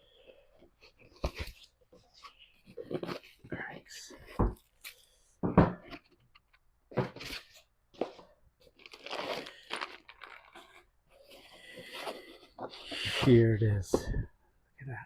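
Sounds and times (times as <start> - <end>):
packaging tearing and crumpling: 8.7 - 10.7.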